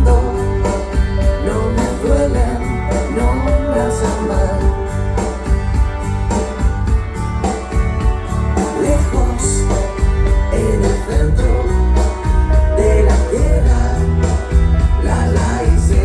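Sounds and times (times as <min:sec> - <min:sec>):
pop-rock song: 0:00.0 - 0:16.0.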